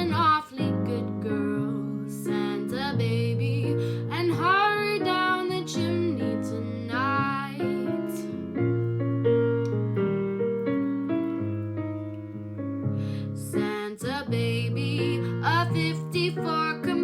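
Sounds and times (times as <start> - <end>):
woman singing: 0.0 - 8.3, 13.4 - 17.0
electric piano chords: 0.0 - 17.0.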